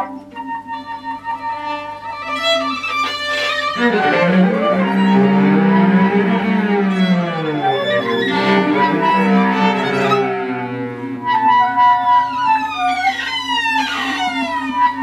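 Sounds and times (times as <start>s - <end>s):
sustained tones: 1.6s - 15.0s
higher sliding tones: 3.6s - 13.0s
low held drone: 3.7s - 14.0s.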